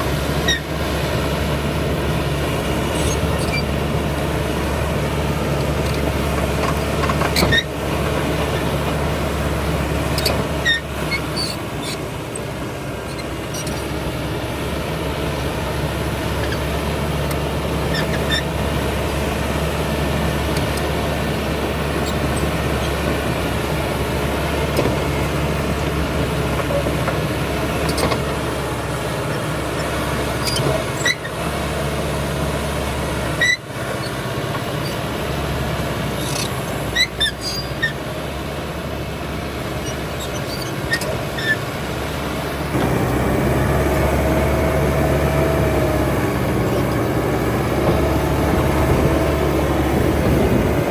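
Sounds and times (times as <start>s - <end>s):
bulldozer diesel engine running: 0.0s - 50.9s
short high squeaks: 0.4s - 0.7s, 2.9s - 3.8s, 7.2s - 7.8s, 10.1s - 14.0s, 16.4s - 16.7s, 17.9s - 18.6s, 21.9s - 22.6s, 29.2s - 31.4s, 33.3s - 34.2s, 34.8s - 35.0s, 36.2s - 38.0s, 39.8s - 41.6s.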